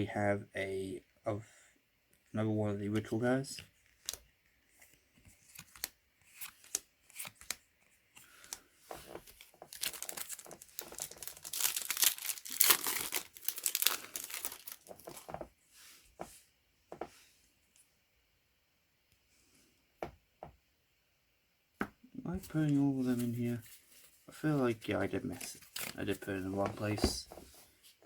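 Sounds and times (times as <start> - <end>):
cards rustling and tapping: 2.9 - 15.5, 24.6 - 27.6
wrapper tearing and crinkling: 9.4 - 15.2.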